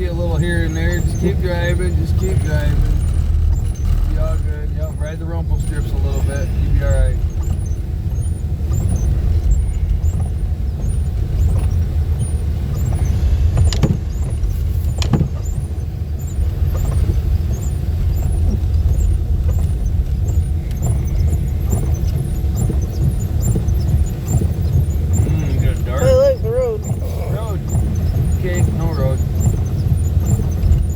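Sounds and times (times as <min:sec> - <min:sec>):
car tyres and engine rumble: 0:00.0 - 0:30.9
sharp knocks: 0:13.6 - 0:15.6.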